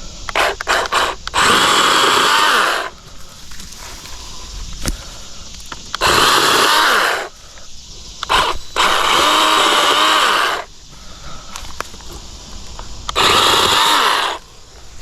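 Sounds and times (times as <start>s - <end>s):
electric chainsaw cutting brush: 0.3s - 5.1s, 6.0s - 7.3s, 8.3s - 10.7s, 13.1s - 14.5s
rustling: 2.7s - 6.3s.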